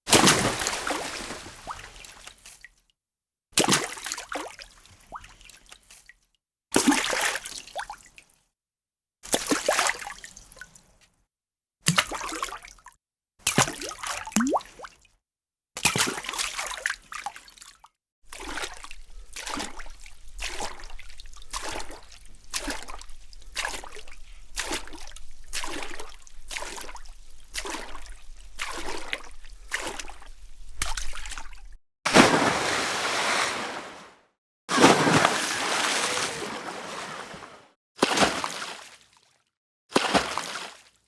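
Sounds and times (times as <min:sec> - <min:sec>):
rush of water: 0:00.1 - 0:02.0, 0:18.3 - 0:37.7
water splashing: 0:00.1 - 0:02.1, 0:18.3 - 0:34.1, 0:34.7 - 0:37.6
rhythmic water sloshing: 0:00.1 - 0:02.3, 0:18.3 - 0:32.6.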